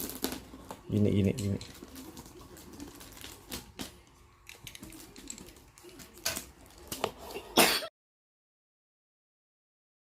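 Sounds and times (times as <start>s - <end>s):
packaging rustling and clicking: 0.0s - 7.2s.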